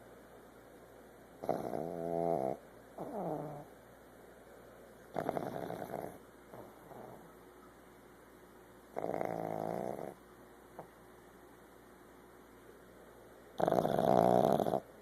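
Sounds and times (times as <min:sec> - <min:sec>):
dog snoring: 0:01.4 - 0:03.7, 0:05.1 - 0:07.3, 0:08.9 - 0:10.2, 0:13.6 - 0:14.9.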